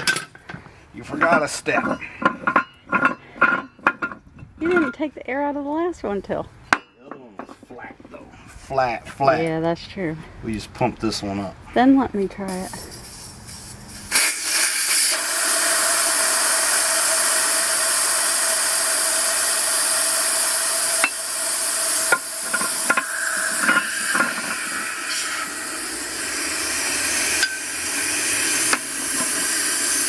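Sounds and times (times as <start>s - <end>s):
air hissing out of tire valve: 12.5s - 30.0s.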